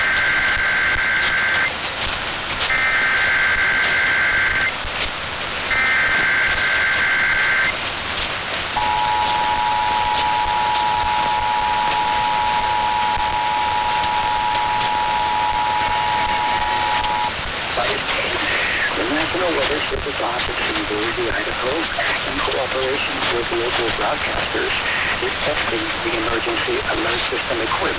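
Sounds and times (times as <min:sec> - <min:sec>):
radio static hiss: 0:00.0 - 0:27.9
two-tone attention signal: 0:02.7 - 0:04.7, 0:05.7 - 0:07.7, 0:08.8 - 0:17.4
warbling digital data tones: 0:02.7 - 0:04.8, 0:05.7 - 0:07.8, 0:08.8 - 0:19.6.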